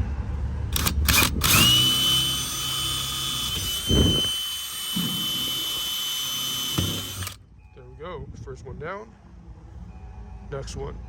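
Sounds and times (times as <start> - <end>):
power drill whining: 0.8 - 7.4.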